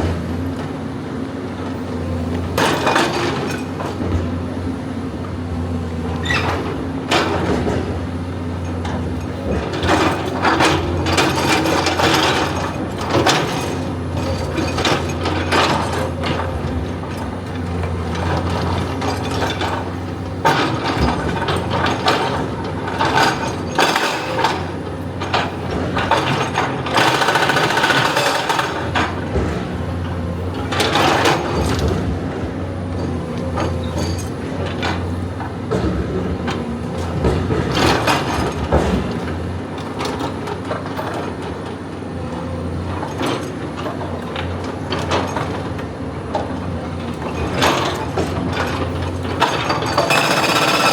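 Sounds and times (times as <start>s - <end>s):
excavator engine hum: 0.0s - 50.9s
metallic clanks and rattles: 8.6s - 41.4s, 46.4s - 50.9s.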